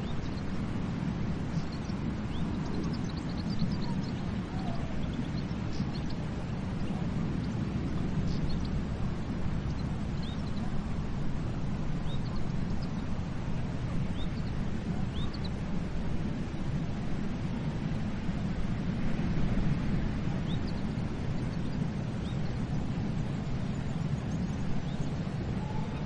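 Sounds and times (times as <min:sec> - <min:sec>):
faint bird chirps: 0:23.7 - 0:26.0.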